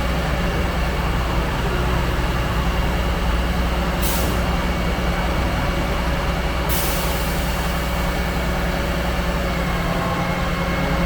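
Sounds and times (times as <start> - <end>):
diesel engine running under load: 0.0 - 11.0
hiss: 6.7 - 7.9.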